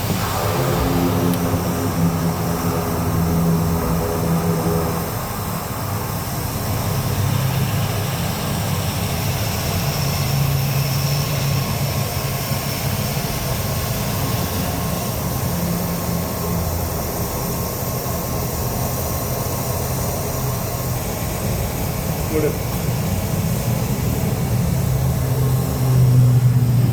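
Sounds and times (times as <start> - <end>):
aeroplane engines during takeoff: 0.0 - 26.9.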